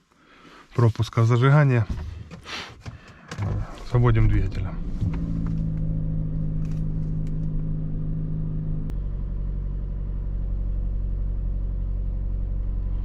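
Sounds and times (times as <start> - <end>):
car engine idling: 3.0 - 13.0.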